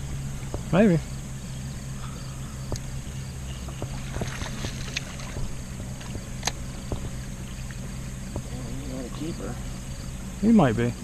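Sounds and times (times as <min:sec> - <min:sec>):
boat electric motor humming: 0:00.0 - 0:11.0.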